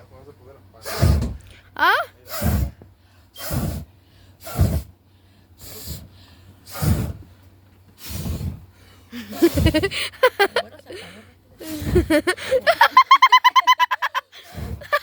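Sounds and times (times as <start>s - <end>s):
person breathing heavily: 8.0s - 12.7s.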